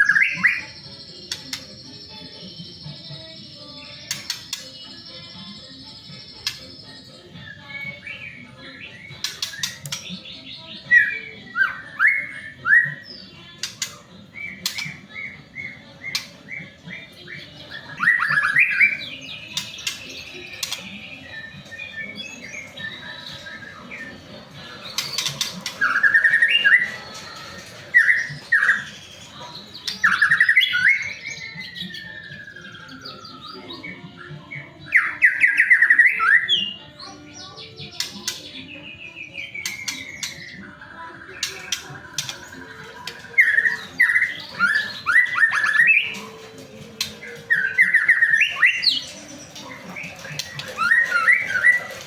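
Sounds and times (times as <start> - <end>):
bird singing whistled phrases: 0.0 - 0.8, 14.4 - 24.1, 30.0 - 34.0, 41.2 - 46.4, 47.2 - 49.2.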